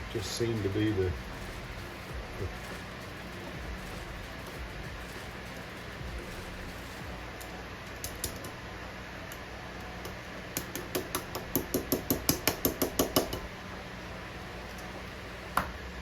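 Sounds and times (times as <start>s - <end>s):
metal tapping on engine parts: 10.0s - 13.5s.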